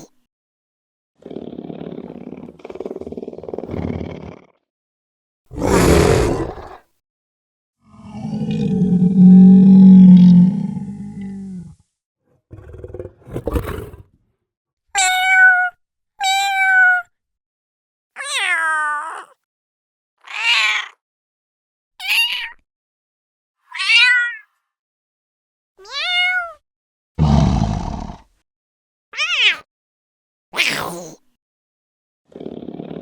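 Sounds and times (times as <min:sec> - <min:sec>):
cat meowing: 0:15.0 - 0:17.1, 0:23.8 - 0:24.4, 0:25.9 - 0:26.6, 0:29.2 - 0:29.6.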